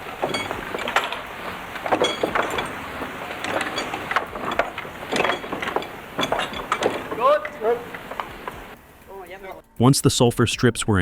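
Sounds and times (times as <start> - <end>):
knocks on wood and metal: 0.0 - 8.8
metallic ring: 0.0 - 9.1.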